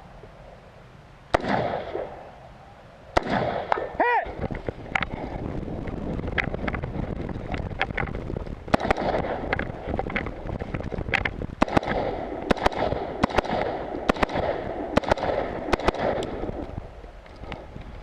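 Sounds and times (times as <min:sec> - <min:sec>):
wind rustling on microphone: 0:00.0 - 0:18.0
rifle shots: 0:01.3 - 0:02.3, 0:03.1 - 0:04.0, 0:08.7 - 0:10.0, 0:11.6 - 0:16.6.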